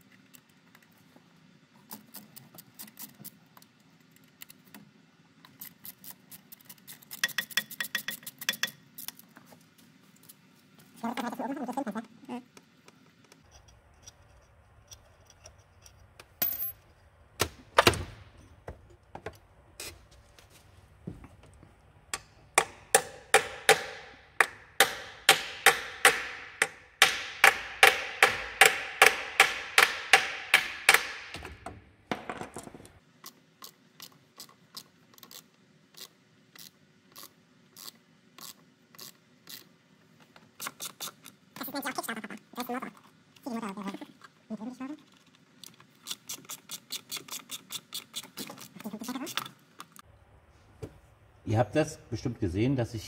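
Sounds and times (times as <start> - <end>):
hammer striking metal: 22.2 - 31.7.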